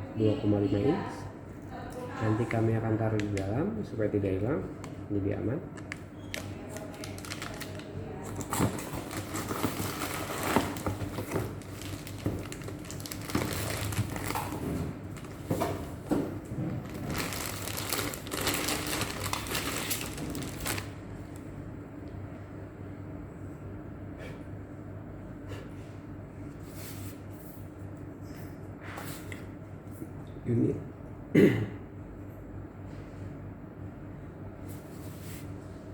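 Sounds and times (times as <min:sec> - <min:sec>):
plastic packaging crinkling: 0:06.2 - 0:16.0, 0:16.8 - 0:21.0.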